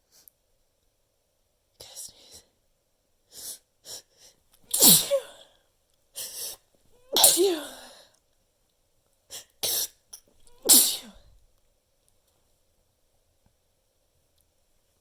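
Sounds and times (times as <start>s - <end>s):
person sneezing: 4.7s - 5.5s, 6.2s - 8.0s, 10.5s - 11.3s.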